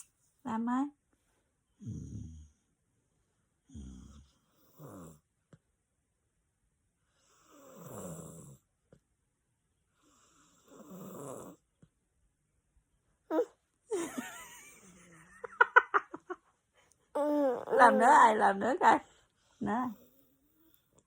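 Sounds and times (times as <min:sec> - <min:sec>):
person snoring: 0:01.8 - 0:02.6, 0:03.7 - 0:05.2, 0:07.2 - 0:08.6, 0:10.0 - 0:11.6.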